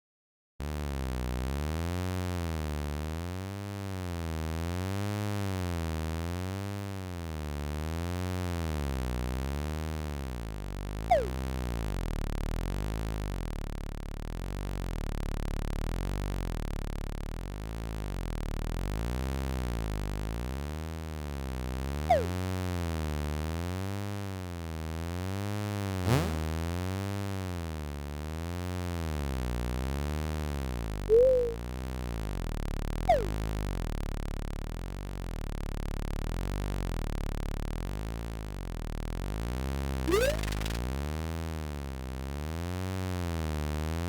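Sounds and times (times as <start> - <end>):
synthesized low wavering buzz: 10.2 - 17.6, 31.1 - 31.7, 32.8 - 36.3, 40.1 - 40.8
loud falling whistle: 31.1 - 31.6, 33.1 - 33.4.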